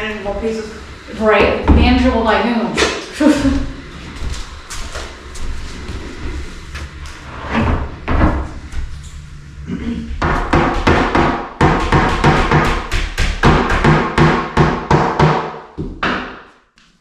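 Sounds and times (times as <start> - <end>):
knocks and thuds: 10.1 - 16.4.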